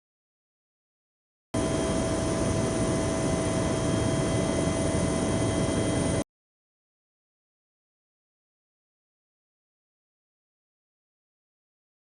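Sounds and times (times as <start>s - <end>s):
aircraft engine noise: 1.6s - 6.2s
whining tones: 1.6s - 6.2s.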